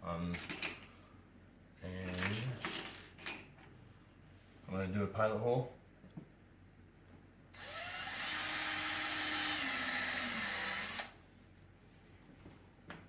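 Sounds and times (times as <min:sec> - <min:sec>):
power drill boring: 0:07.6 - 0:11.2.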